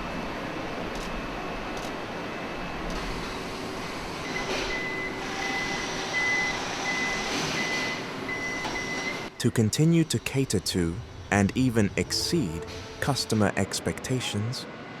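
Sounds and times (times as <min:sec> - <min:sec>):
machinery hum: 0:09.3 - 0:15.0.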